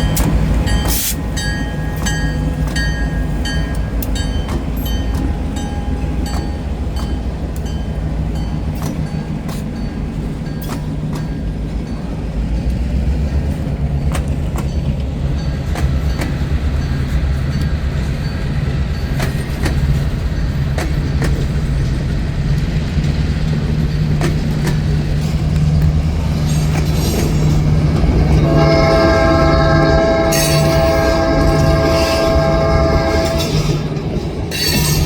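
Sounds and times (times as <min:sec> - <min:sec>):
diesel locomotive engine rumble: 0:00.0 - 0:35.0
train horn blowing: 0:28.1 - 0:35.0.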